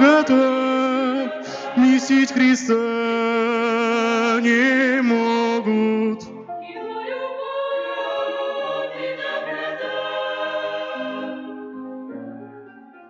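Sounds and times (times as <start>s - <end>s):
choir singing a hymn: 0.0s - 12.8s.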